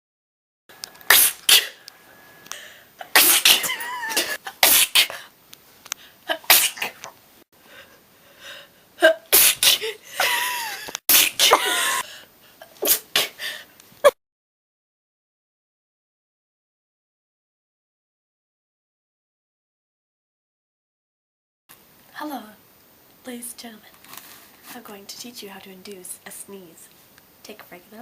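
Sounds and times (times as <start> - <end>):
person sneezing: 1.1 - 1.8, 2.6 - 5.3, 6.3 - 7.1, 9.0 - 14.2.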